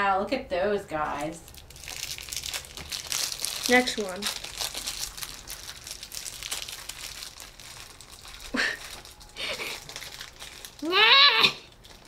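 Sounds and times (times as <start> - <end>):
wrapper crinkling and tearing: 1.1 - 12.0
person exclaiming: 10.8 - 11.6.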